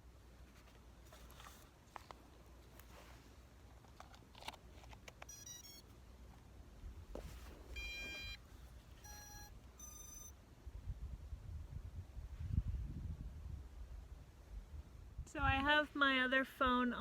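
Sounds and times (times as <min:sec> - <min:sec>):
electronic beeps: 0:05.3 - 0:05.8, 0:07.8 - 0:08.4, 0:09.0 - 0:10.3
short electronic chirps: 0:05.3 - 0:05.8, 0:07.8 - 0:08.4, 0:09.0 - 0:10.3.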